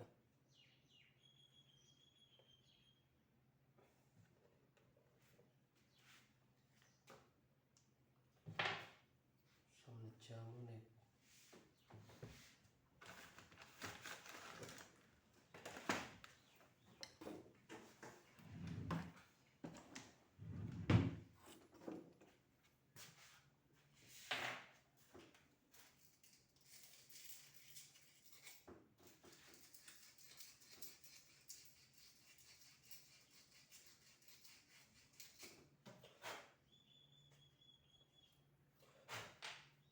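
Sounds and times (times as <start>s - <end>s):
fan parts knocking and scraping: 17.2s - 19.2s, 20.4s - 22.2s.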